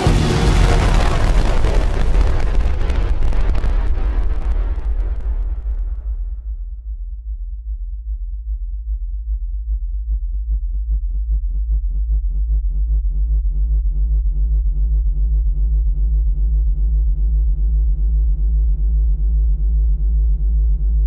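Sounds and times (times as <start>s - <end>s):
electronic music with deep bass: 0.0s - 3.0s
pulsing synthesizer note: 0.0s - 3.0s.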